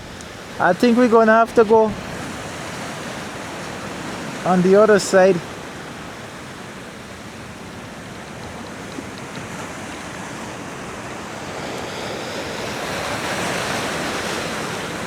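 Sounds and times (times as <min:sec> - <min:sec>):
sea surf washing against rocks: 0:00.0 - 0:15.0.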